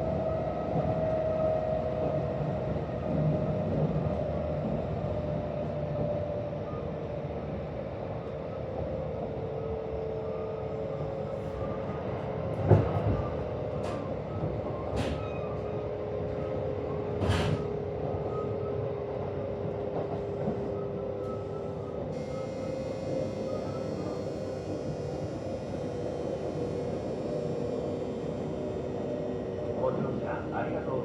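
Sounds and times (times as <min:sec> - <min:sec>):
train running rumble: 0:11.0 - 0:31.0
train inverter whining: 0:12.7 - 0:31.0.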